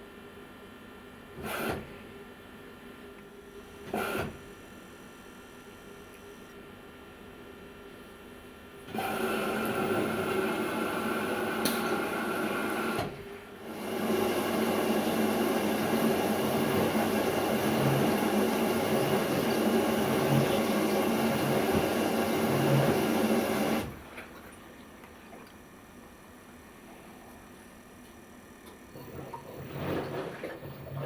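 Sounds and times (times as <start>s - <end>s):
washing machine motor humming: 8.9s - 31.0s.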